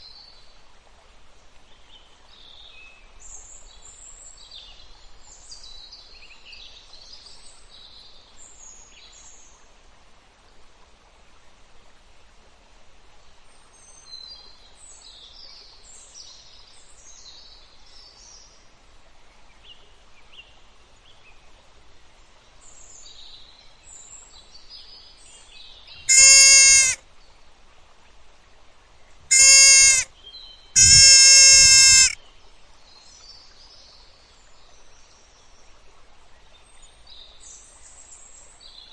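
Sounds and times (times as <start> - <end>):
faint birdsong chirps: 13.2 - 27.5, 28.9 - 38.9
loud bleats: 26.1 - 27.0, 29.3 - 30.1, 30.8 - 32.2.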